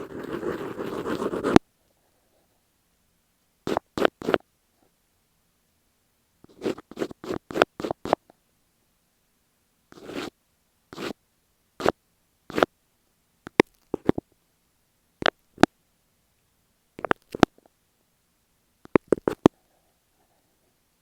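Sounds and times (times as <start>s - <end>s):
scratching on tape: 0.0s - 1.6s, 3.6s - 4.4s, 6.5s - 8.3s, 9.9s - 10.3s, 10.9s - 11.2s, 11.8s - 12.7s, 13.5s - 14.3s, 17.0s - 17.6s, 18.9s - 19.5s.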